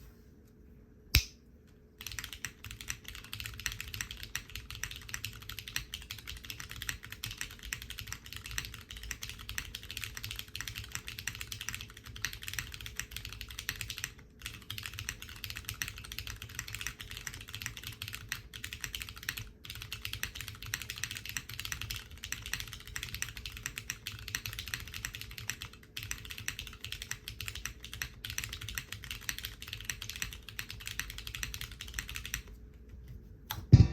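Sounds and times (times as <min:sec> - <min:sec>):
sharp click: 0:01.1 - 0:01.4
mechanical keyboard typing: 0:02.0 - 0:32.5.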